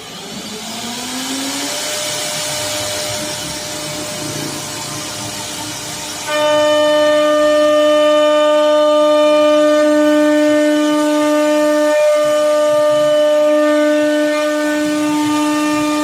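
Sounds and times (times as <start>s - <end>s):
router spindle high-pitched whine: 0.0s - 16.0s.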